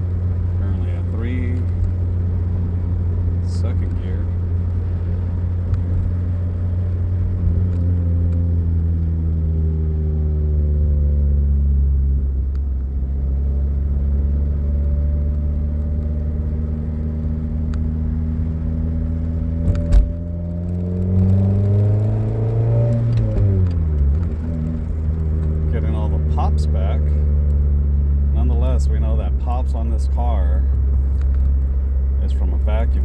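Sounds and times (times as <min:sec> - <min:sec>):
car engine drone: 0:00.0 - 0:33.0
road noise: 0:00.0 - 0:33.0
thump: 0:19.6 - 0:20.2.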